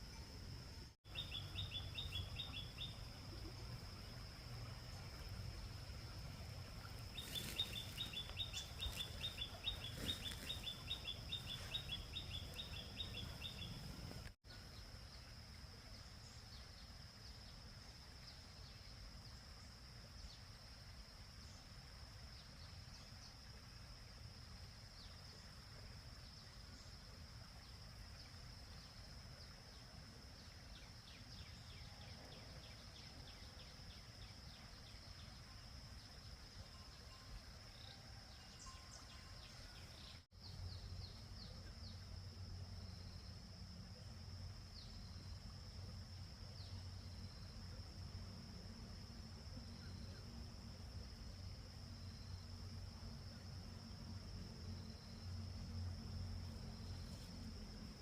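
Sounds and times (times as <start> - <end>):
faint outdoor ambience: 0.0 - 58.0.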